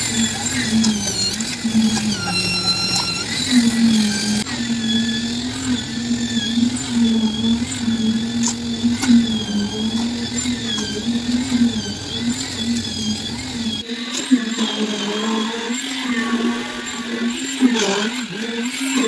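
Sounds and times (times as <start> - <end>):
concrete mixer engine hum: 0.0 - 19.0
high squealing tones: 0.0 - 19.0
sharp clicks: 5.4 - 13.8.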